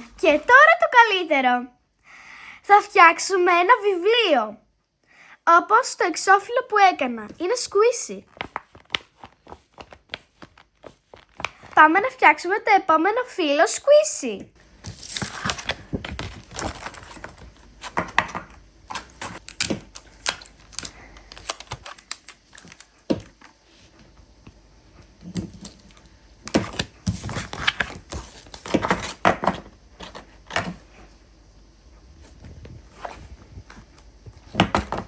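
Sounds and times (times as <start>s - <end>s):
paper rustling: 8.2s - 12.1s, 14.7s - 24.1s, 25.2s - 31.1s, 32.2s - 35.0s.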